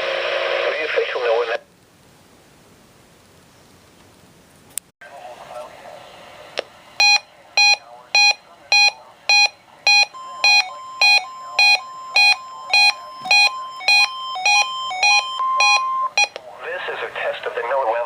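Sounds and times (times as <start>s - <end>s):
faint steady alarm tone: 7.0s - 16.4s
short high alarm beeps: 7.0s - 16.4s.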